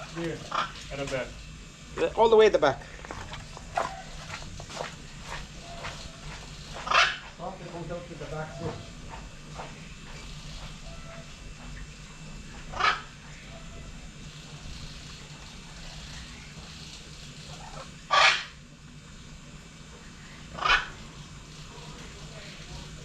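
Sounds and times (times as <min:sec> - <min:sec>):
steady low hum: 0:00.0 - 0:23.0
short loud animal calls: 0:06.8 - 0:07.2, 0:17.6 - 0:18.6.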